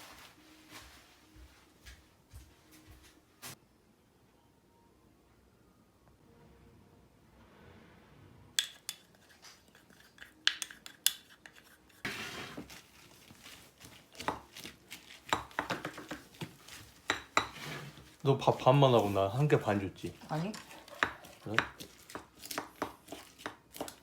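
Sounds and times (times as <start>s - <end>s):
utensils clinking on dishes: 8.6s - 12.8s, 14.0s - 24.0s.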